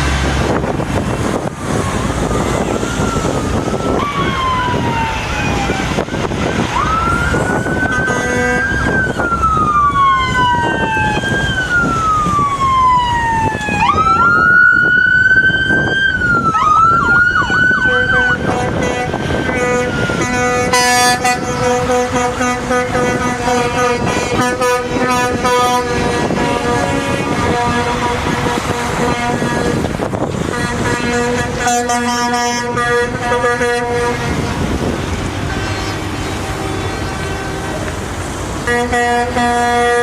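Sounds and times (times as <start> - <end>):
emergency sirens wailing: 0.0 - 40.0
truck air horns blaring: 5.9 - 12.4, 17.7 - 40.0.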